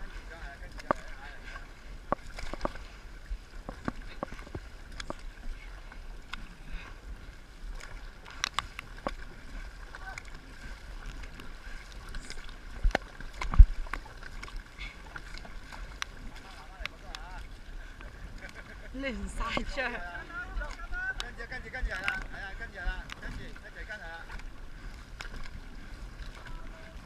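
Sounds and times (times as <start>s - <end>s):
paddles splashing in water: 0.0s - 27.0s.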